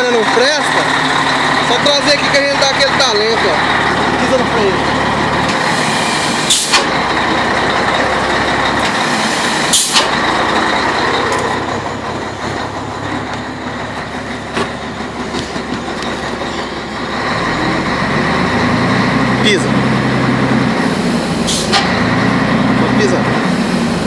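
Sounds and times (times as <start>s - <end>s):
diesel truck exhaust brake: 0.0s - 24.0s
air hiss: 5.6s - 7.0s, 9.0s - 10.1s.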